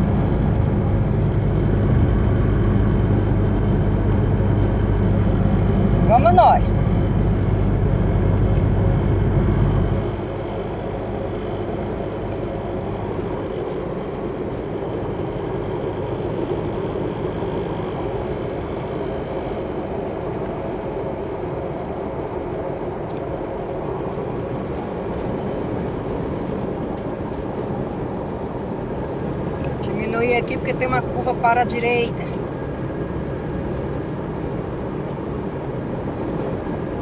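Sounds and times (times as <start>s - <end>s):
heavy low rumble: 0.0s - 19.6s
pickup truck road drone: 0.0s - 37.0s.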